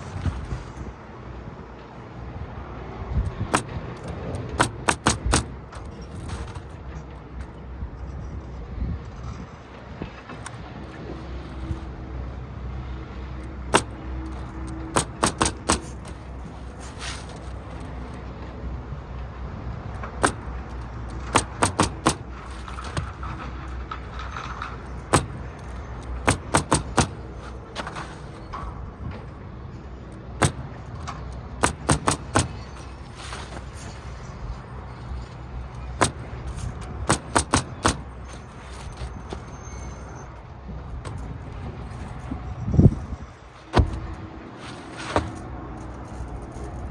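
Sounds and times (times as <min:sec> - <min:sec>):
pneumatic nailer firing: 0:03.4 - 0:06.7, 0:13.7 - 0:17.9, 0:20.2 - 0:23.5, 0:24.9 - 0:28.5, 0:30.4 - 0:34.0, 0:36.0 - 0:39.5
nail gun shots: 0:04.6 - 0:05.5, 0:13.7 - 0:14.0, 0:14.9 - 0:16.1, 0:20.2 - 0:20.4, 0:21.2 - 0:22.3, 0:26.2 - 0:27.2, 0:30.4 - 0:30.6, 0:31.6 - 0:32.7, 0:36.0 - 0:36.3, 0:37.1 - 0:38.1.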